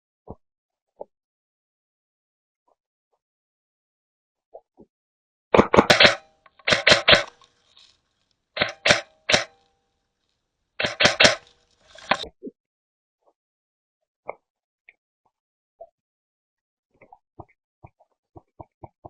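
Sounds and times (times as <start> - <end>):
airsoft gun firing bursts: 5.6 - 7.4, 8.6 - 9.6, 10.8 - 12.2.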